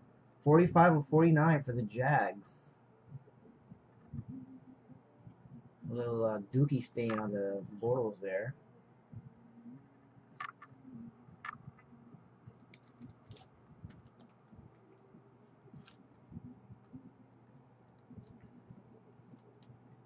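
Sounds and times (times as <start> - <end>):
trading cards rustling: 12.6 - 15.0, 15.6 - 19.8.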